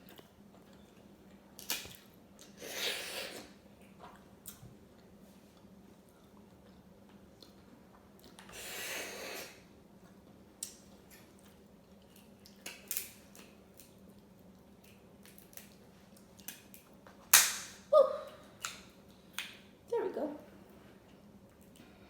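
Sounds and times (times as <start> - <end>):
crab shell clicks and snaps: 12.6 - 13.9, 16.4 - 17.8
crab shell cracking: 12.6 - 14.0.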